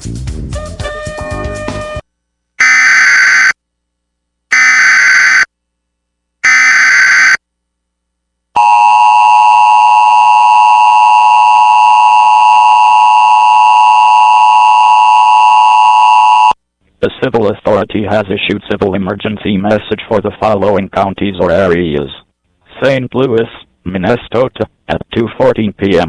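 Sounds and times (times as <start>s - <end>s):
digital header squawks: 2.6s - 3.6s, 4.5s - 5.5s, 6.4s - 7.4s.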